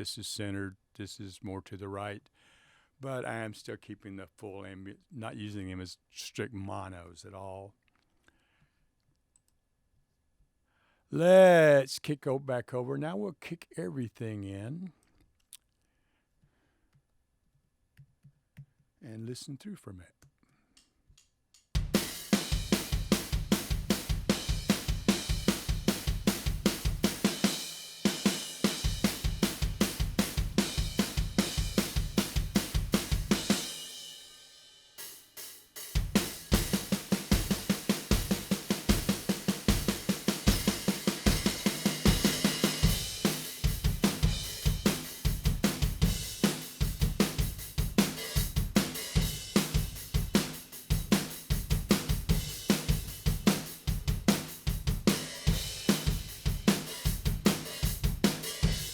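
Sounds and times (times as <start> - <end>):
drum kit beat: 11.2 - 11.8, 21.8 - 34.4, 35.0 - 58.9.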